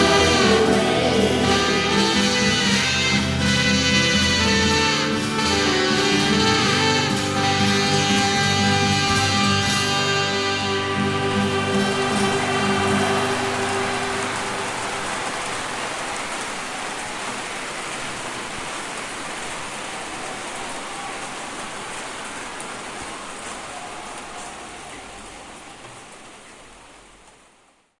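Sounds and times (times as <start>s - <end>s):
band music ringing off: 0.0s - 15.6s
steady rain: 0.0s - 28.0s.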